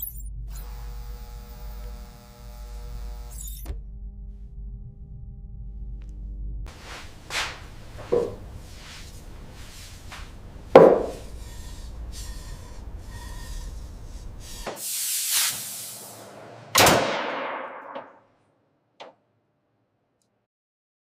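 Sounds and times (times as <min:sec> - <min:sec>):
machinery low hum: 0:00.0 - 0:14.8, 0:15.6 - 0:17.0
hiss of air: 0:06.7 - 0:16.7
machinery clank: 0:15.6 - 0:18.2
sharp bang: 0:16.2 - 0:18.2.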